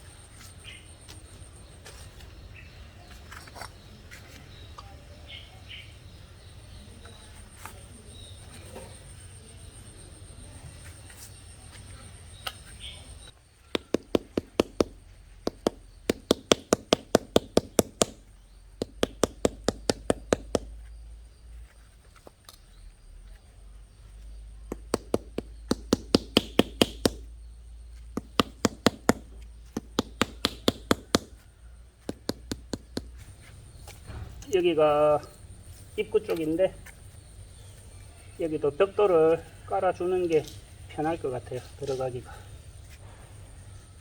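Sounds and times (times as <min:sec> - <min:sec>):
hand tool knocking on brick: 0:13.7 - 0:20.9, 0:24.7 - 0:27.3, 0:28.1 - 0:31.4, 0:32.0 - 0:33.4.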